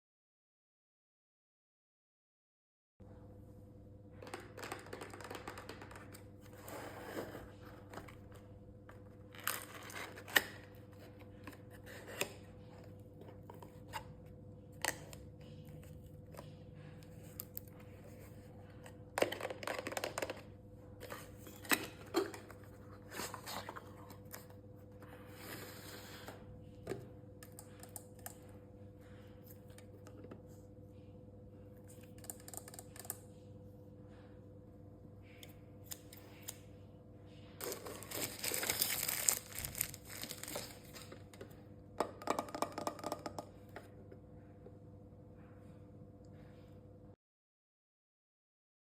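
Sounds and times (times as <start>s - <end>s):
packaging rustling and tearing: 37.6s - 41.2s.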